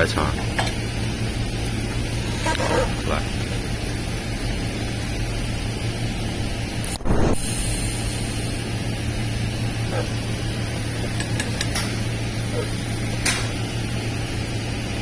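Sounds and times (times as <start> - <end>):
low hum: 0.3 - 15.0
welding arc hissing: 6.7 - 13.6.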